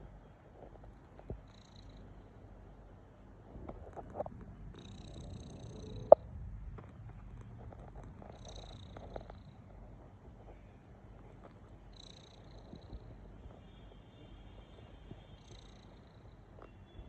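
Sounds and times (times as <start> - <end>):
cat snoring: 1.2 - 2.2, 3.6 - 6.3, 7.2 - 10.6, 11.2 - 13.6, 14.8 - 16.5.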